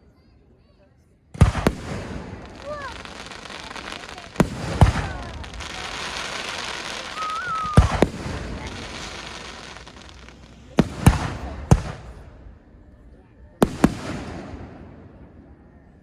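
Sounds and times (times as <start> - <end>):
hissing crackle: 1.4 - 12.6
fireworks bangs: 1.4 - 12.8, 13.6 - 15.6.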